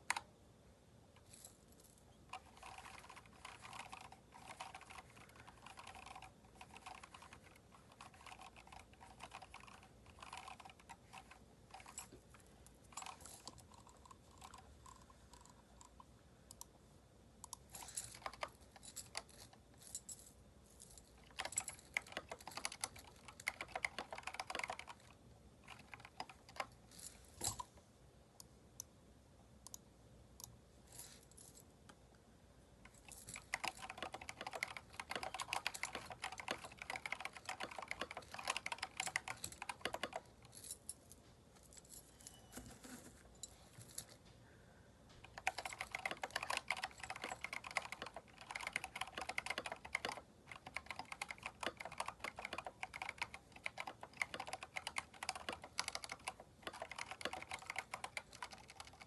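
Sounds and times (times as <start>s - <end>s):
mechanical keyboard typing: 2.3s - 12.2s, 12.8s - 16.0s, 17.5s - 19.5s, 21.2s - 26.8s, 32.9s - 40.6s, 45.2s - 59.0s.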